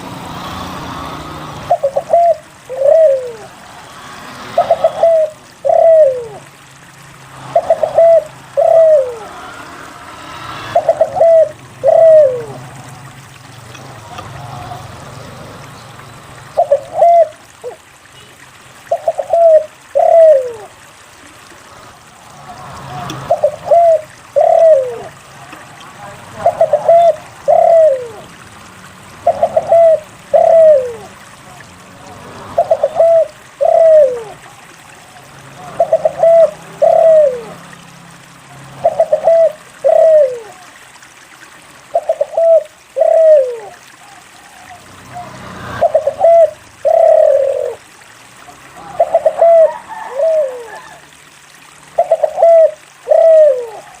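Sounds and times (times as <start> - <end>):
dove cooing: 1.6 - 3.6, 4.5 - 6.6, 7.4 - 9.8, 10.6 - 13.1, 16.6 - 17.8, 18.9 - 20.8, 22.5 - 31.7, 32.6 - 37.7, 38.7 - 40.8, 41.9 - 51.2, 51.9 - 54.0.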